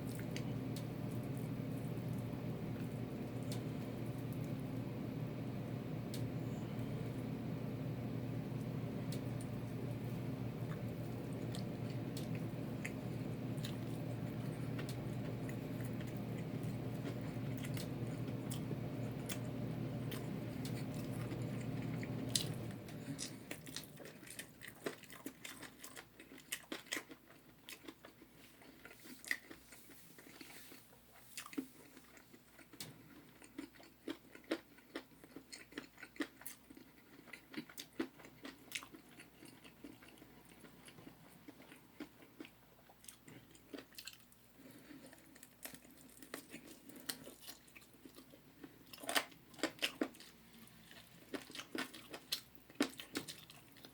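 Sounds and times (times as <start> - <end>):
steady low hum: 0.0 - 25.6
chewing and crunching fried chicken: 0.0 - 53.9.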